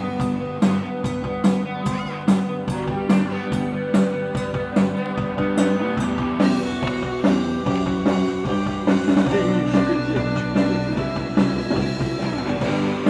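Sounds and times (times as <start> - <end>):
bass guitar: 0.0 - 13.0
drum kit beat: 0.0 - 13.0
guitar: 0.0 - 13.0
rock music: 0.0 - 13.0.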